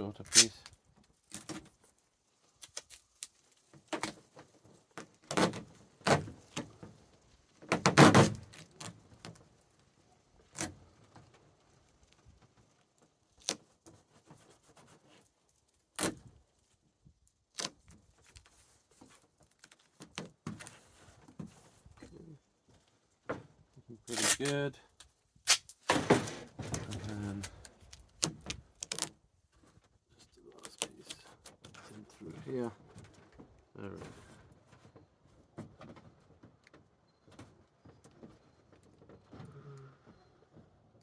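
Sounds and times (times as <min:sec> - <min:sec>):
duct tape ripping: 0:00.2 - 0:01.7, 0:02.6 - 0:04.2, 0:13.4 - 0:13.6, 0:15.9 - 0:16.3, 0:17.5 - 0:18.5, 0:24.1 - 0:24.7, 0:25.4 - 0:26.4, 0:27.2 - 0:29.2.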